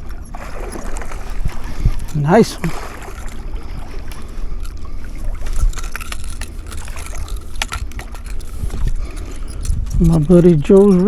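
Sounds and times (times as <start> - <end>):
wind rumbling on microphone: 0.0 - 11.0
handling clicks and knocks: 5.6 - 11.0.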